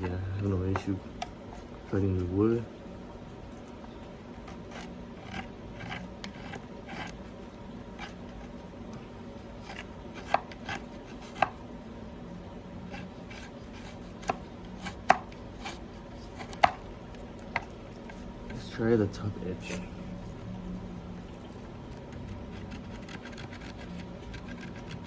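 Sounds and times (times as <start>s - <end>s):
knife scraping wood: 3.5s - 8.6s, 9.5s - 11.6s, 12.9s - 18.7s, 21.3s - 25.0s.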